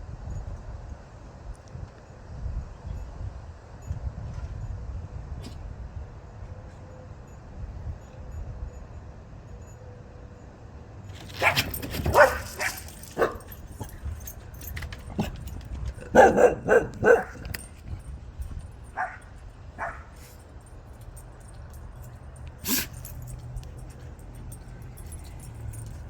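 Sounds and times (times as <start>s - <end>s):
dog barking: 11.3s - 14.0s, 16.0s - 17.7s, 19.0s - 20.3s.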